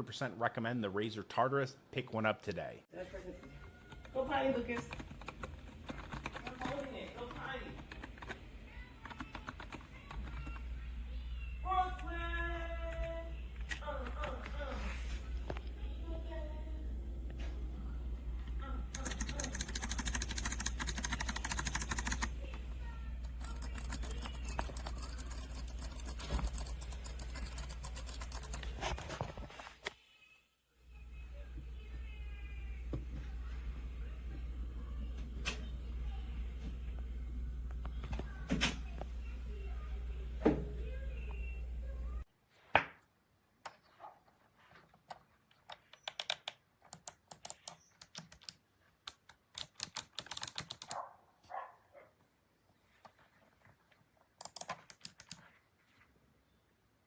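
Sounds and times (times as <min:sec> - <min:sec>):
keypad keys clicking: 0:03.9 - 0:08.4, 0:09.0 - 0:10.6, 0:19.0 - 0:22.3, 0:23.3 - 0:28.7, 0:45.7 - 0:50.9, 0:54.4 - 0:55.4.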